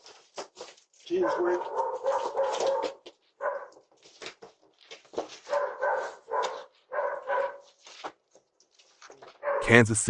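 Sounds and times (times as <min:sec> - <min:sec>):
dog barking: 0:01.1 - 0:03.8, 0:05.4 - 0:07.7, 0:09.3 - 0:09.8.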